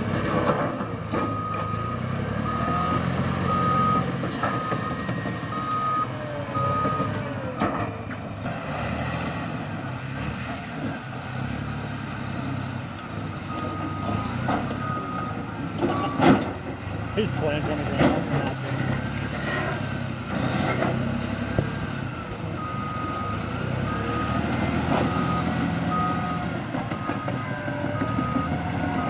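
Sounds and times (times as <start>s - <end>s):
bulldozer diesel engine running: 0.0s - 29.0s
backup alarm beeping: 2.5s - 7.7s.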